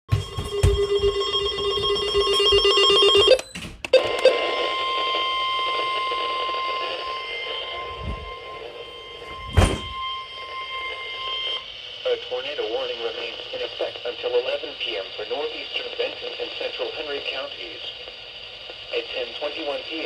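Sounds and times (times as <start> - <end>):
long steady alert tone: 0.1 - 11.6
warbling data tones: 4.2 - 11.9.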